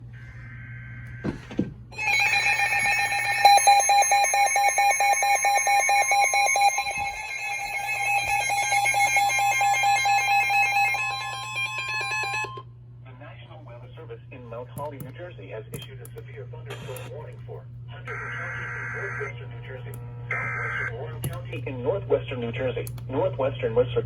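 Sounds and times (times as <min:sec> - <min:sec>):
warbling electronic alarm tone: 0:01.9 - 0:12.6.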